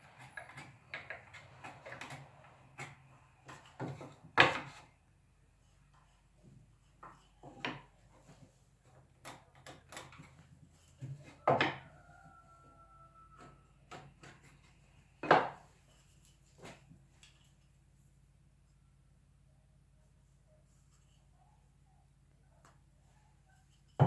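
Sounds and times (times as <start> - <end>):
hard objects knocking on wood: 11.0 - 11.8, 15.2 - 15.6.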